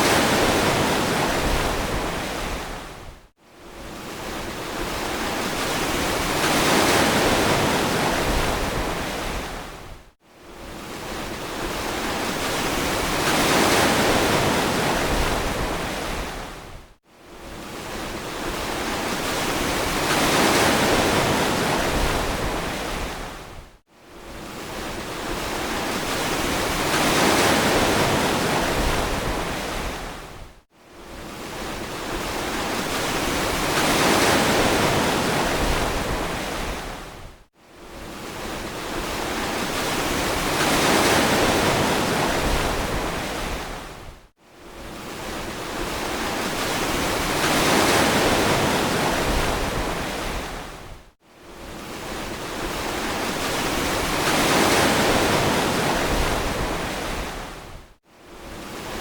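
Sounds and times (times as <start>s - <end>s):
ocean waves washing in: 24.2s - 57.8s.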